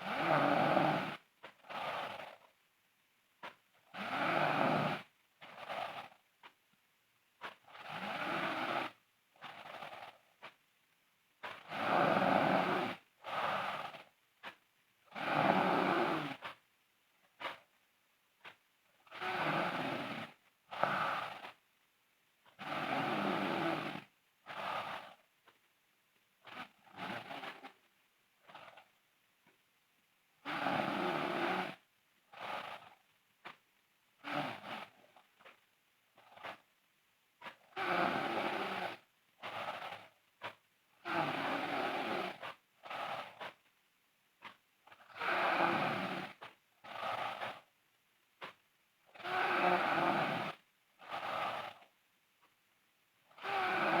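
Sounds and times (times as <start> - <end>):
girl snoring: 0.0 - 2.5, 3.8 - 6.2, 7.6 - 10.2, 11.5 - 14.1, 15.1 - 16.6, 19.0 - 21.6, 22.6 - 25.2, 26.4 - 27.8, 28.5 - 28.9, 30.4 - 33.0, 34.2 - 35.3, 37.5 - 40.2, 41.0 - 43.6, 44.9 - 47.7, 49.1 - 51.9, 53.2 - 54.0.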